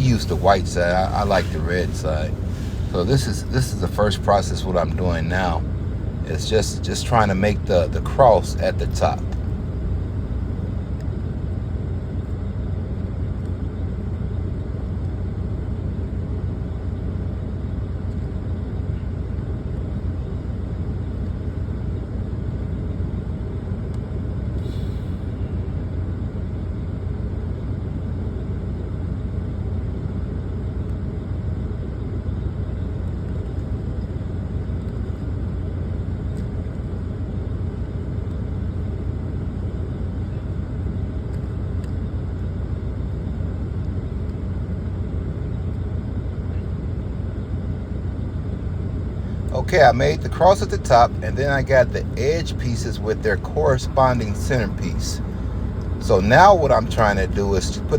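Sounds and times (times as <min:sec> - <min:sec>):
truck engine rumbling: 0:00.0 - 0:10.8, 0:49.2 - 0:57.9.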